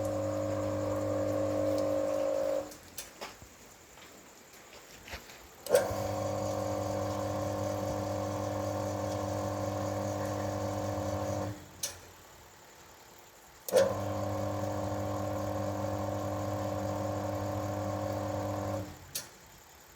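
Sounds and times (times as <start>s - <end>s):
electric motor humming: 0.0s - 2.8s, 5.7s - 11.7s, 13.7s - 19.0s.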